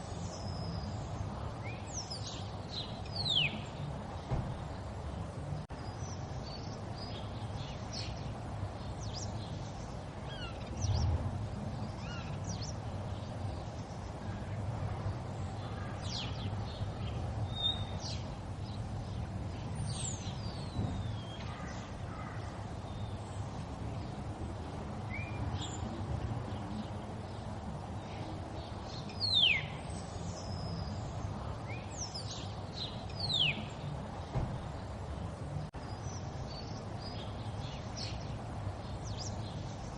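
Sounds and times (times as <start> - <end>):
small birds whistling: 0.0 - 3.9, 8.9 - 11.1, 29.0 - 33.9.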